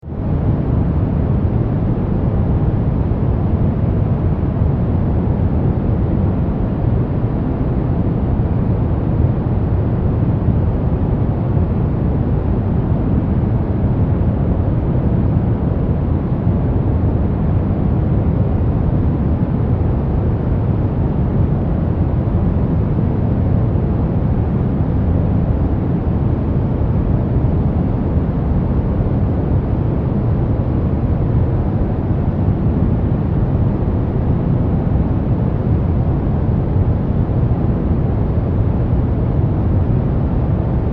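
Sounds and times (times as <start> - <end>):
brown noise: 0.1 - 40.9.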